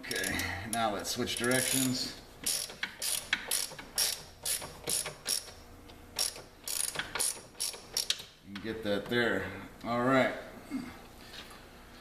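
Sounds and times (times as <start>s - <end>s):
socket ratchet clicking: 1.4s - 5.6s, 6.2s - 8.3s.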